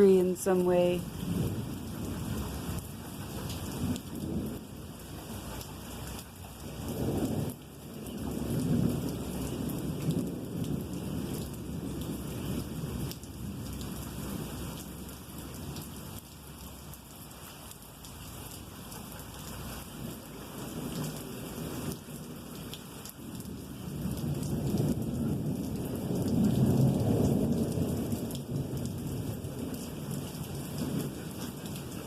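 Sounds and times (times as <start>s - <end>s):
steady rain: 0.0s - 32.0s
rolling thunder: 1.1s - 5.5s, 6.6s - 15.1s, 23.4s - 31.7s.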